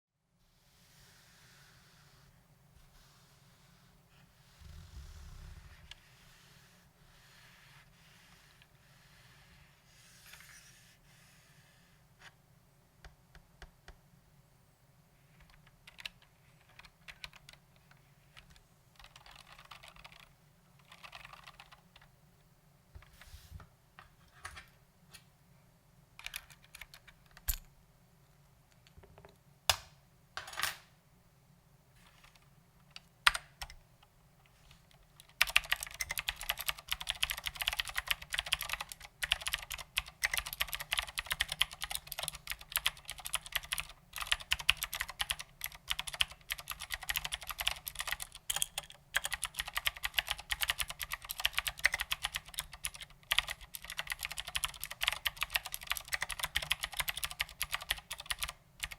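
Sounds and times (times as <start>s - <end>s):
clicky mechanical keyboard typing: 15.4s - 22.1s, 26.2s - 27.6s, 35.2s - 58.9s.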